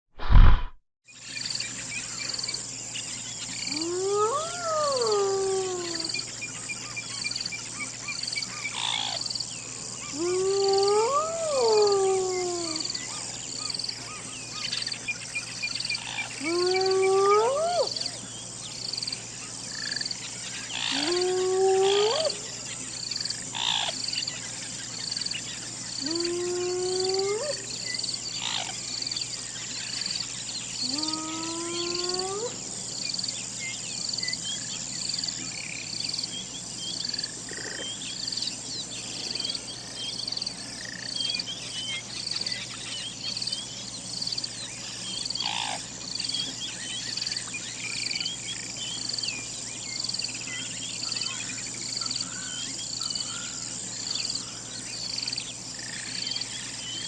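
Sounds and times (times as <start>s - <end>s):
hyena calling: 3.7s - 6.2s, 10.0s - 13.2s, 16.3s - 18.2s, 20.8s - 22.5s.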